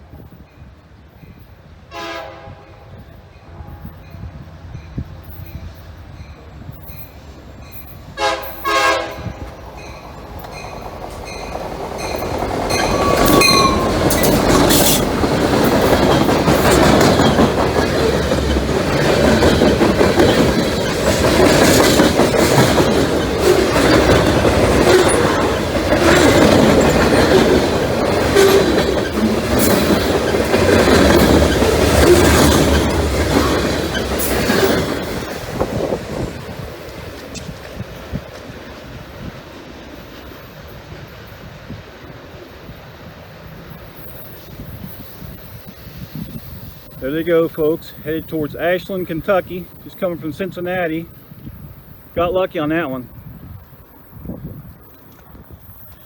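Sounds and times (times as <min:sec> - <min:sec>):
freight train wheels rumbling: 0:00.0 - 0:56.0
train horn: 0:01.9 - 0:04.2, 0:08.1 - 0:09.5
wheels clacking over rail joints: 0:04.8 - 0:51.2.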